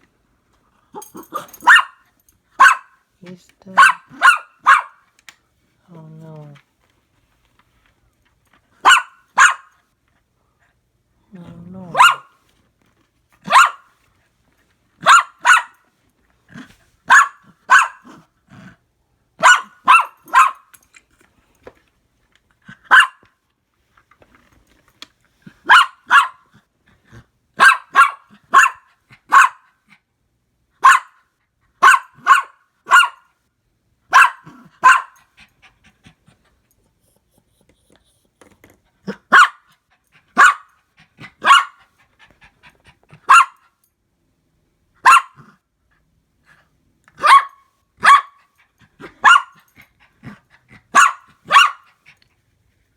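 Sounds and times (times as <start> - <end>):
dog barking: 1.1 - 2.0, 2.6 - 3.0, 3.7 - 5.0, 8.8 - 9.7, 11.9 - 12.4, 13.4 - 13.9, 15.0 - 15.8, 17.1 - 18.2, 19.4 - 20.7, 22.9 - 23.2, 25.6 - 26.5, 27.6 - 29.8, 30.8 - 31.2, 31.8 - 33.3, 34.1 - 35.2, 39.1 - 39.7, 40.4 - 40.8, 41.4 - 41.8, 43.2 - 43.6, 45.0 - 45.5, 47.2 - 48.4, 49.1 - 49.7, 50.9 - 51.9.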